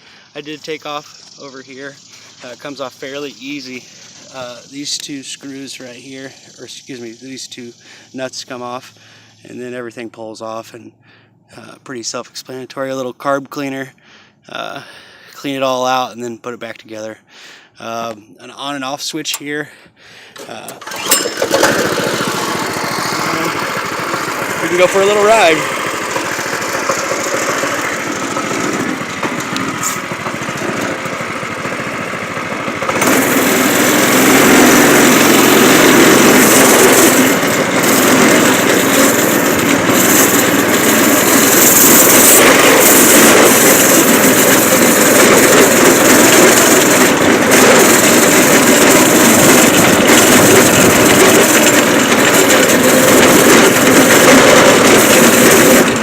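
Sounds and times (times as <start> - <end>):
go-kart engine: 0.0 - 8.1, 20.3 - 56.0.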